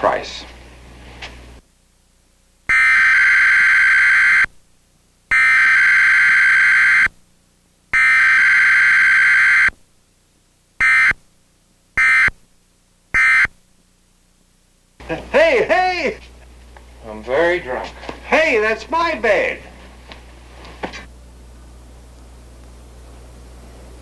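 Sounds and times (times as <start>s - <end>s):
buzzing digital data bursts: 5.3s - 7.1s, 8.0s - 9.7s, 12.0s - 12.4s.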